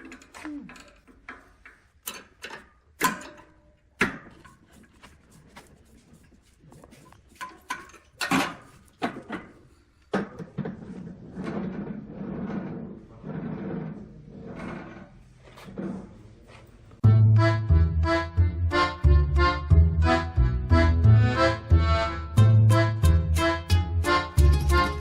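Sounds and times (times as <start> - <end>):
wooden knocks and clatters: 7.3 - 13.0
rough steady scraping: 10.7 - 16.6.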